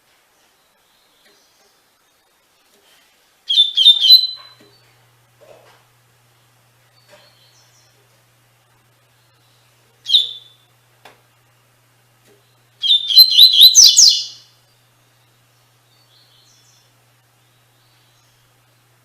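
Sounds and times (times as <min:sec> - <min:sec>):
bird singing high notes: 0:03.5 - 0:04.6, 0:10.1 - 0:10.6, 0:12.8 - 0:14.5.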